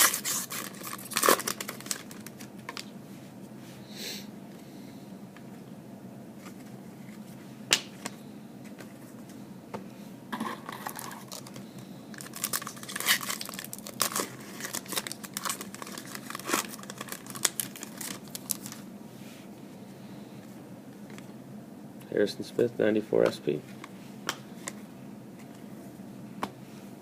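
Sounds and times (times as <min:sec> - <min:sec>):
foil wrapper crinkling and tearing: 0:00.0 - 0:02.9, 0:10.6 - 0:18.8.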